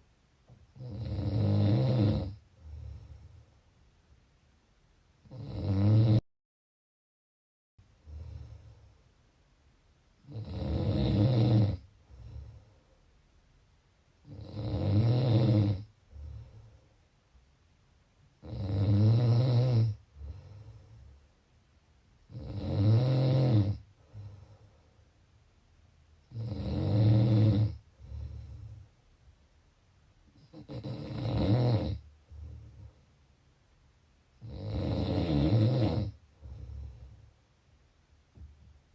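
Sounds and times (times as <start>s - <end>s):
person snoring: 0.8s - 3.3s, 5.2s - 6.2s, 10.3s - 12.6s, 14.2s - 16.7s, 18.4s - 21.0s, 22.3s - 24.5s, 26.3s - 28.8s, 30.4s - 32.9s, 34.4s - 37.2s
quiet breath: 2.2s - 4.2s, 7.8s - 9.6s, 11.8s - 13.8s, 15.8s - 18.5s, 19.9s - 22.4s, 23.7s - 26.9s, 27.6s - 31.1s, 32.0s - 33.6s, 36.0s - 38.9s.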